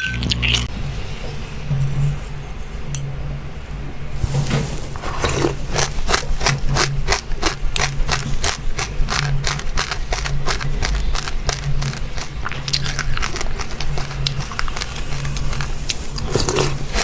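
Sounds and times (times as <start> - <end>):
steady low hum: 0.0 - 17.0
person chewing crunchy seeds: 5.0 - 17.0.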